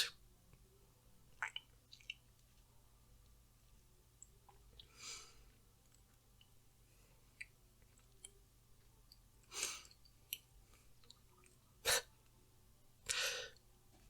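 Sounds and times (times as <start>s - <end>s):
person breathing softly: 4.9s - 5.6s, 13.1s - 13.6s.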